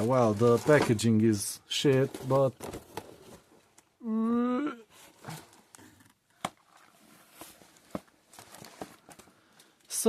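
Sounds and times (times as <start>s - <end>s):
packaging rustling: 0.0s - 3.8s, 5.0s - 9.8s
person saying uhh: 4.0s - 4.9s.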